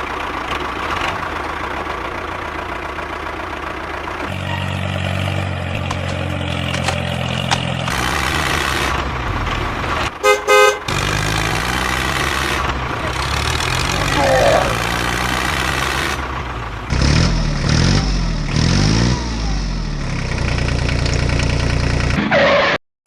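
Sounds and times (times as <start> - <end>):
toy tractor engine sound: 0.0 - 22.7
toy horn honks: 10.2 - 11.0.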